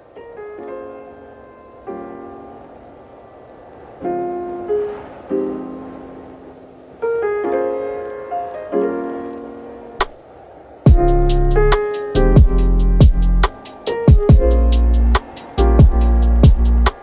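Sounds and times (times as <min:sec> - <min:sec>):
soft music chords: 0:10.9 - 0:17.0.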